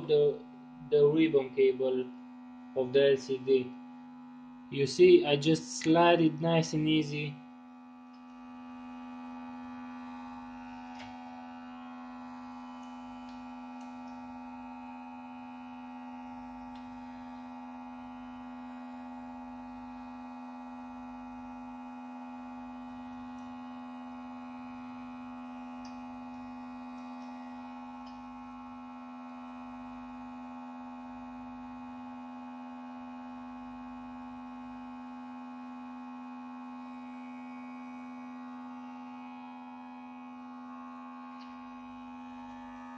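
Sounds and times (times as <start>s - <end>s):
steady electrical hum: 0.0s - 42.9s
faint small ticks: 12.8s - 14.4s, 25.8s - 28.3s.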